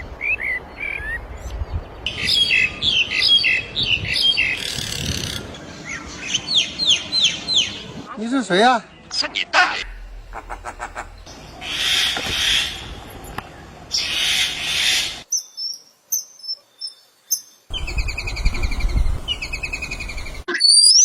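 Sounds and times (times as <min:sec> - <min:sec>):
bird trilled notes: 0:09.8 - 0:13.4
bird hissing calls: 0:09.9 - 0:13.0, 0:13.9 - 0:15.2.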